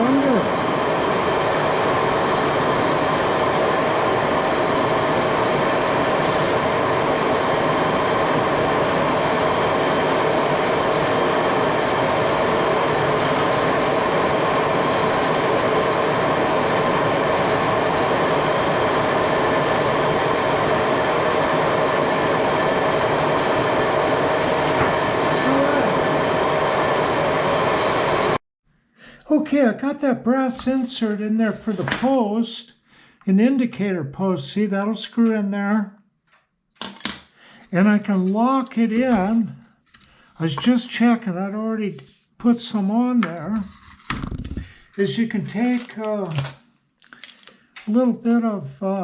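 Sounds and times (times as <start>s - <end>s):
machine drone with whine: 0.0s - 28.4s.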